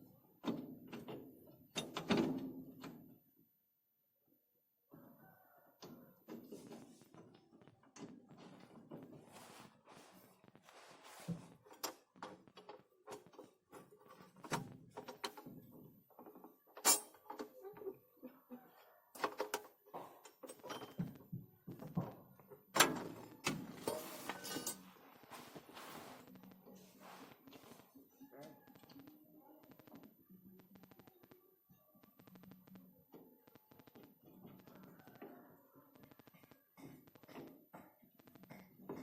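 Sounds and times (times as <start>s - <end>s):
hand tools and metal parts clanking: 7.9s - 17.6s, 19.2s - 21.2s, 22.8s - 26.2s.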